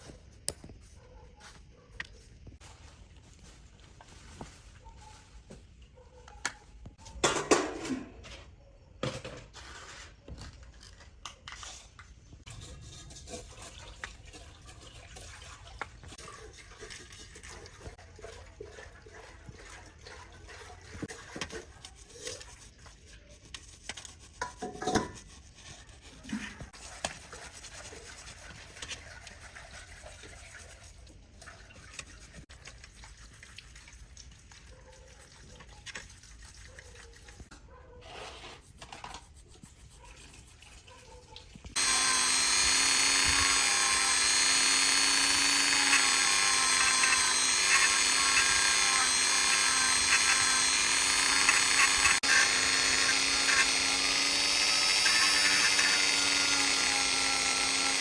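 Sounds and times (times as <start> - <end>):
squeaky scrapes: 9.5 - 14.0, 36.5 - 41.3
small brush scrubbing: 21.0 - 33.9, 35.2 - 58.0.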